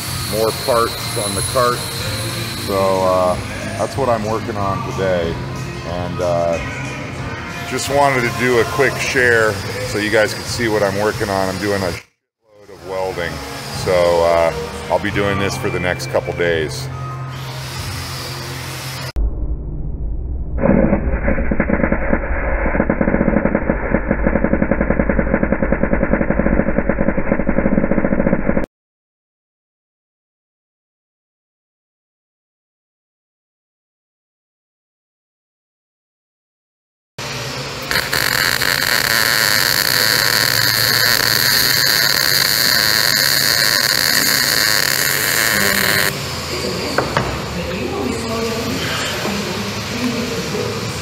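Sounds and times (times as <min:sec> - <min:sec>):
welding arc crackling: 0:00.0 - 0:02.6, 0:07.8 - 0:12.0, 0:20.6 - 0:28.7, 0:37.6 - 0:46.5
low hum: 0:19.1 - 0:28.7, 0:37.7 - 0:48.6.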